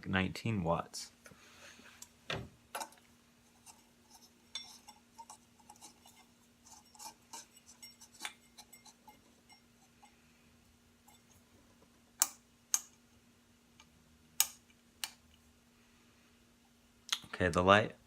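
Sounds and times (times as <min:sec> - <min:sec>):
light bulb clicks and taps: 0:14.4 - 0:15.2.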